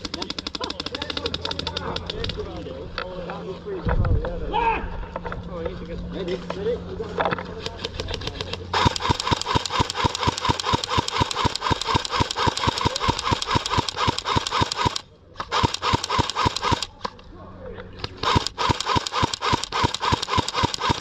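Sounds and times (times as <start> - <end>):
airsoft gun rapid shots: 0.0 - 2.4, 7.6 - 17.0, 18.0 - 21.0.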